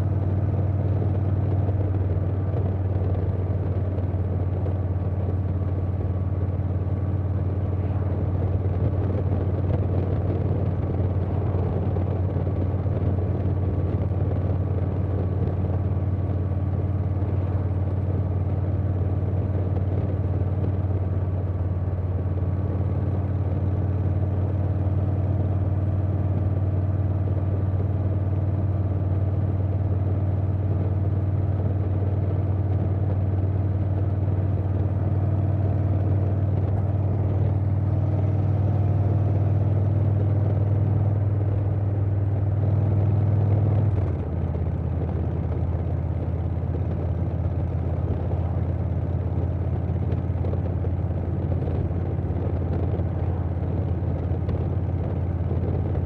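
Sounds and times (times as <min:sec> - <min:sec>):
wind noise: 0:00.0 - 0:24.7
motorcycle engine cruising: 0:00.0 - 0:56.0.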